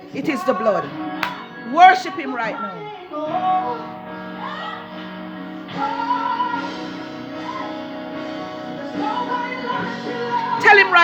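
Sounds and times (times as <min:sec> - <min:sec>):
woman singing long notes: 0:00.0 - 0:04.8
instrumental backing: 0:00.0 - 0:11.0.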